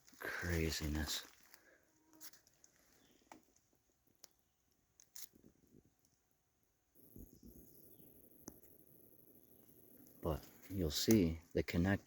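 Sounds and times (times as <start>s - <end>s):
faint sharp clicks: 11.0s - 11.3s.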